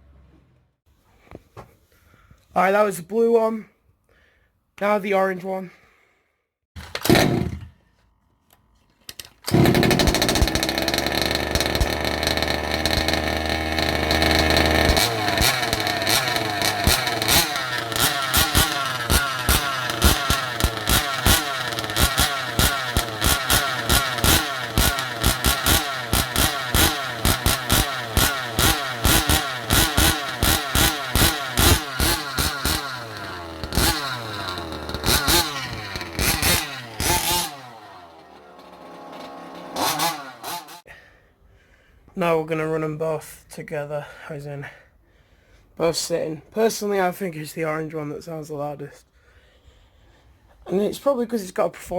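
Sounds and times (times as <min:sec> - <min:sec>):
two-stroke engine revving: 0:07.0 - 0:07.6, 0:09.5 - 0:40.8.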